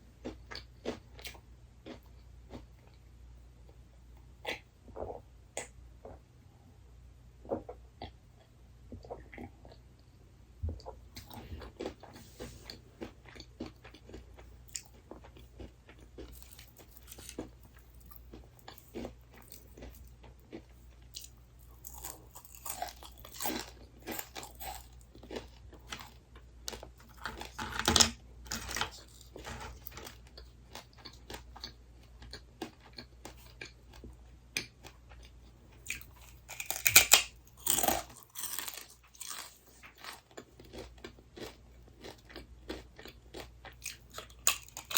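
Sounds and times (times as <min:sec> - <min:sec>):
person chewing crunchy food: 0:00.1 - 0:03.0, 0:10.6 - 0:44.9.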